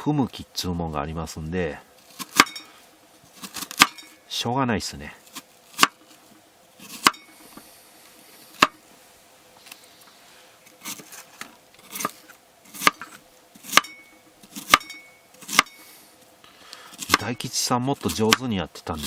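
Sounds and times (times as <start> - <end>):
knife chopping onion on board: 2.1 - 2.6, 3.4 - 4.0, 5.3 - 6.0, 6.8 - 7.2, 11.9 - 15.8, 17.0 - 17.4, 18.0 - 18.5.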